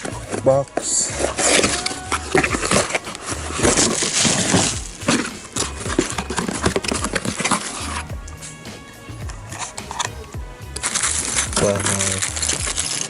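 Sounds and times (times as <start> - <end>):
packaging rustling and crinkling: 1.0 - 8.5, 10.8 - 13.0.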